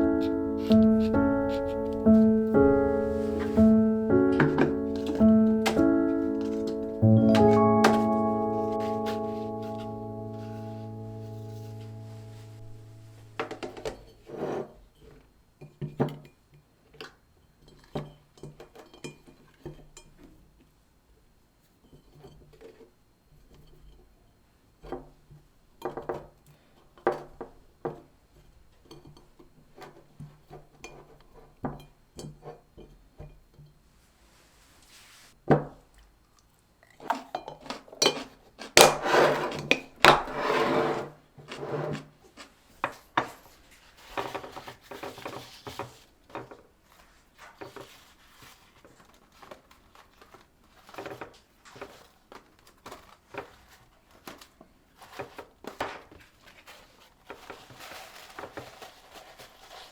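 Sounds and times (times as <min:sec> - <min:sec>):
dishes and containers clinking: 0:04.3 - 0:09.9, 0:37.0 - 0:40.4.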